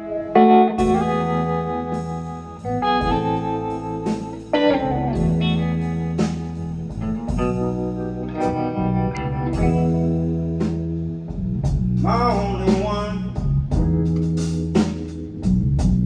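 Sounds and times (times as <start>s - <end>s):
electric guitar notes: 0.0s - 12.7s
bass: 0.0s - 16.0s
steady drum beat: 0.8s - 8.1s, 9.6s - 16.0s.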